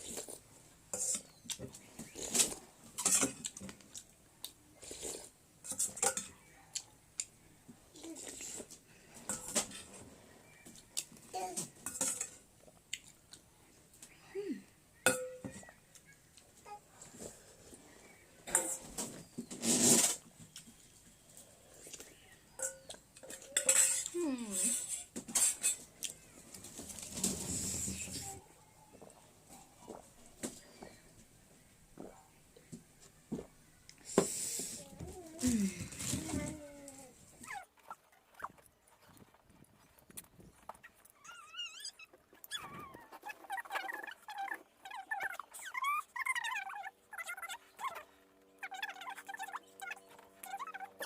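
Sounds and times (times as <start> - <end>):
hissy mouth noises: 34.0 - 35.9.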